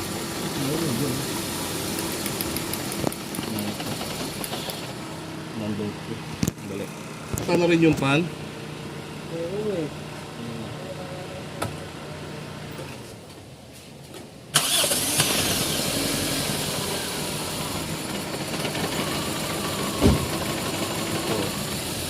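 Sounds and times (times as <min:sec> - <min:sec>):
engine idling with misfire: 0:00.0 - 0:13.2, 0:14.5 - 0:22.0
thump: 0:20.0 - 0:20.3.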